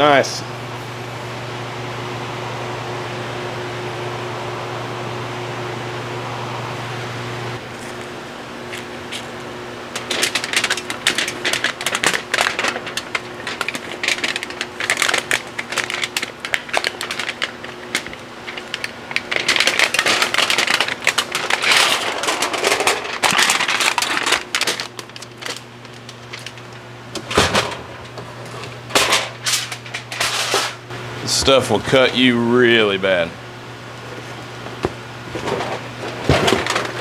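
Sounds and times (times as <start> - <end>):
steady fan hum: 0.0 - 37.0
metal foil crinkling: 8.7 - 26.8.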